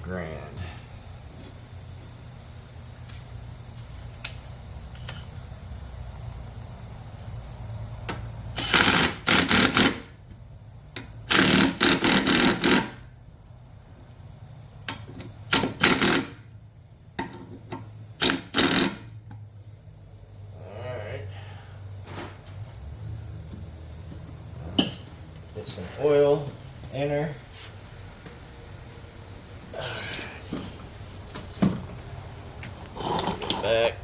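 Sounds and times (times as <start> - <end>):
pneumatic impact wrench bursts: 8.5 - 10.2, 11.2 - 13.1, 15.3 - 16.5, 18.1 - 19.2.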